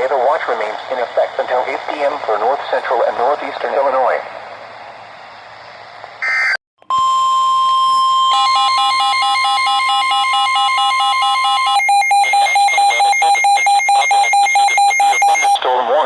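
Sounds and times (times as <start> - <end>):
steady alert tone: 6.2 - 15.6
rapidly pulsing beeping alarm: 6.2 - 15.7.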